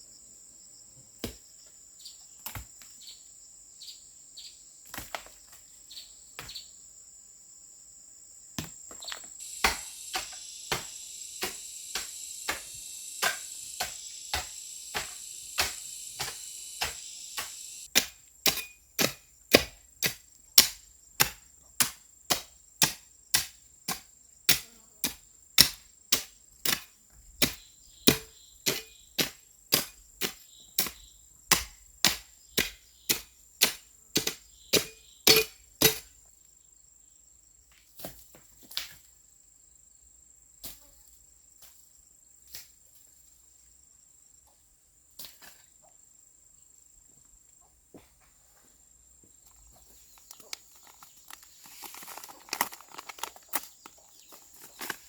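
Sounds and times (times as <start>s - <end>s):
crickets trilling: 2.9s - 37.7s, 48.8s - 55.0s
hissing insect buzz: 9.3s - 17.9s
hand tool chopping: 9.4s - 36.1s.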